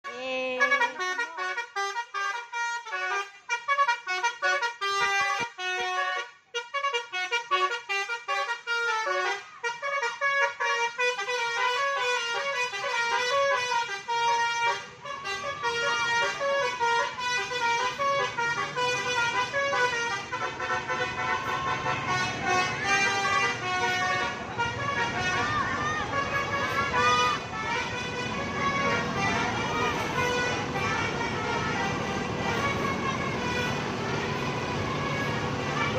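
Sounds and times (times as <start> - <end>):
musical bus horn: 0.0 - 35.9
low engine rumble: 10.6 - 35.9.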